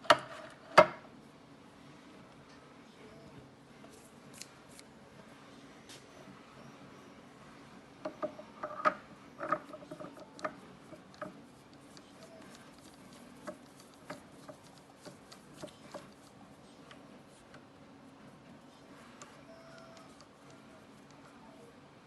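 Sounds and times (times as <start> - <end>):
metal parts clicking and tapping: 8.1 - 11.4.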